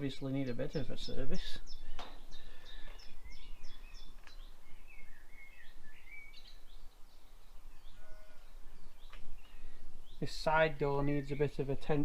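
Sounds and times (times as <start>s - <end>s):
birds chirping: 0.0s - 12.0s
steady background hiss: 0.0s - 12.0s.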